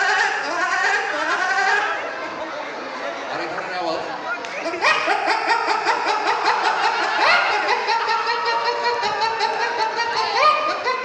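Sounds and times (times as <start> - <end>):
man imitating a chicken: 0.0 - 2.0.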